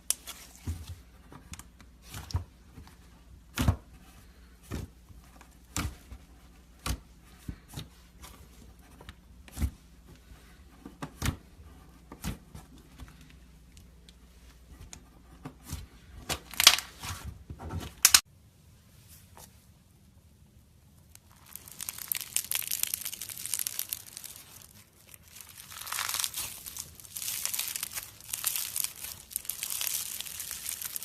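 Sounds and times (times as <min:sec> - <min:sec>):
slime popping: 0:21.2 - 0:31.0.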